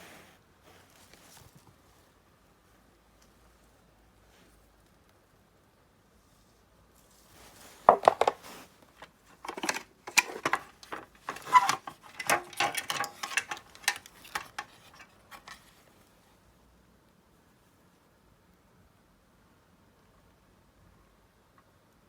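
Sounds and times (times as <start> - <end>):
small hard objects clattering: 7.3 - 15.8.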